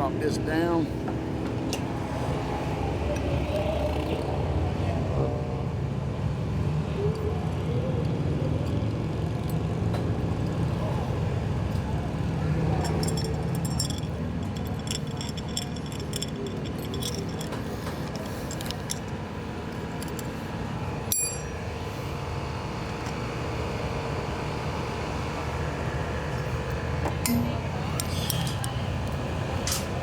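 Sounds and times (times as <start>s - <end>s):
steady low hum: 10.1s - 30.0s
metal parts clinking: 12.6s - 21.7s, 27.2s - 30.0s.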